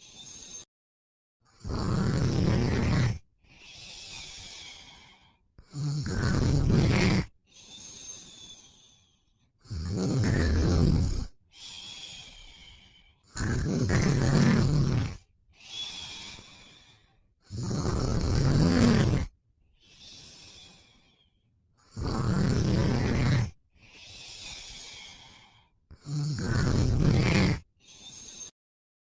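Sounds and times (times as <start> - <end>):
quiet breaths: 0.0 - 0.7, 3.4 - 6.0, 7.2 - 9.7, 10.3 - 13.4, 15.1 - 17.4, 19.7 - 22.0, 22.8 - 26.1, 27.6 - 28.6
man snoring: 1.5 - 8.9, 9.6 - 21.1, 21.8 - 28.5.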